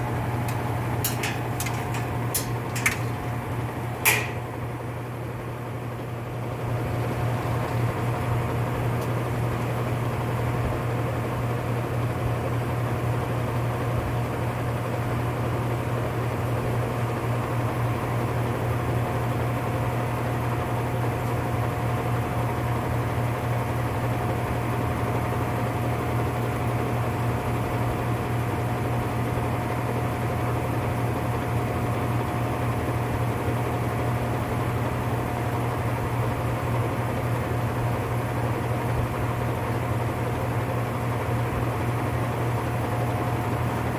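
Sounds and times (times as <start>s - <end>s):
washer spin drone: 0.0s - 5.3s.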